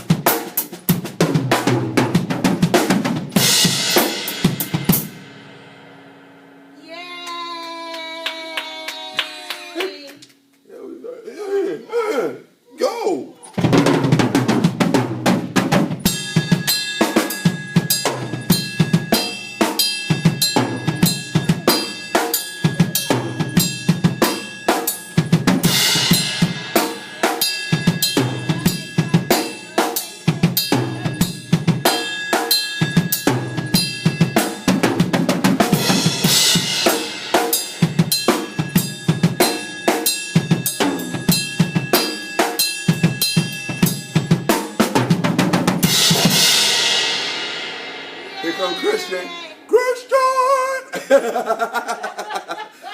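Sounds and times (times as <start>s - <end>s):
cymbal crashes: 3.4s - 6.5s, 16.0s - 35.1s, 35.7s - 44.8s, 45.8s - 49.0s.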